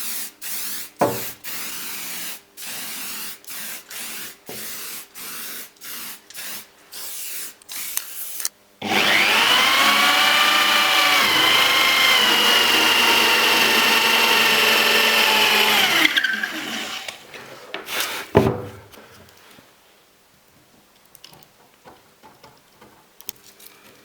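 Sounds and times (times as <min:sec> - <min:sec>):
power tool motor running: 0:08.8 - 0:17.2.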